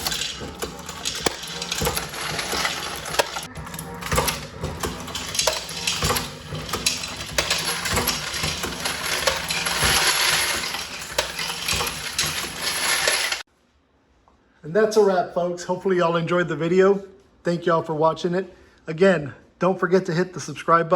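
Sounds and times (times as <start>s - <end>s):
motor hum: 0.0s - 13.4s.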